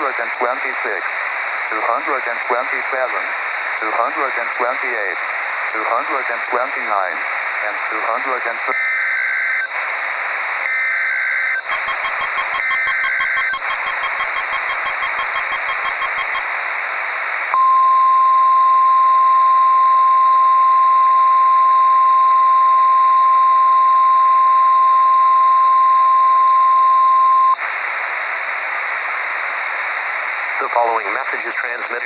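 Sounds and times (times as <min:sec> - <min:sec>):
radio hiss: 0:00.0 - 0:17.5, 0:27.3 - 0:32.0
steady warning alarm tone: 0:10.7 - 0:16.5
two-pitch data burst warble: 0:11.6 - 0:16.4
rapid beeping: 0:11.6 - 0:16.5.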